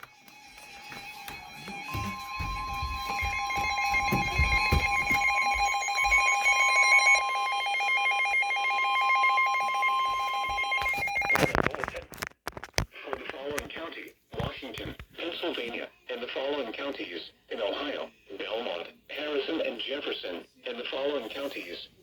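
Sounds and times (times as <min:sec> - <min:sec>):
two-tone alert signal: 0:01.5 - 0:11.6.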